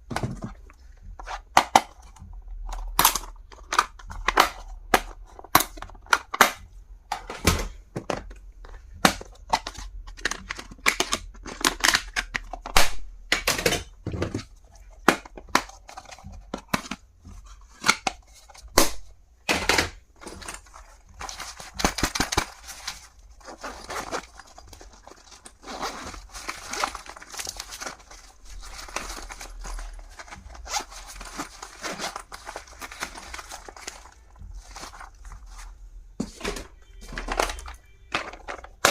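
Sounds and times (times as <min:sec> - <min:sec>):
plastic wrapping rustling: 0:13.8 - 0:19.2, 0:19.8 - 0:38.9.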